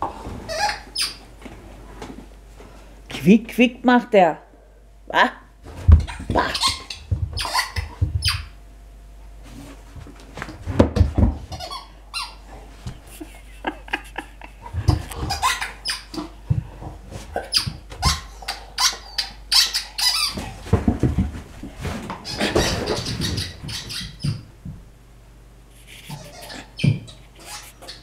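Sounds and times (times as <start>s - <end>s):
squeaky toy squeaks: 6.5s - 8.5s, 11.5s - 12.4s, 15.2s - 16.1s, 17.5s - 20.4s, 26.2s - 28.0s.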